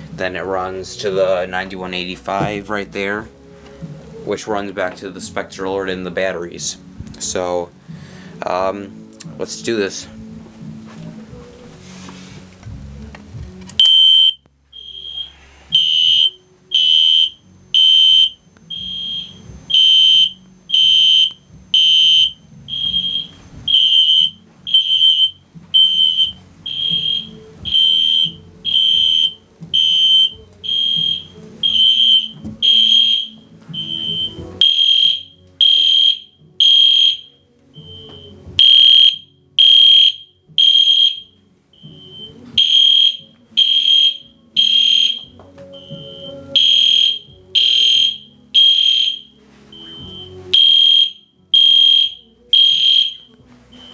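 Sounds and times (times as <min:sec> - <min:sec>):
faint music: 0:00.0 - 0:53.9
fire alarm horn beeping: 0:13.8 - 0:53.9.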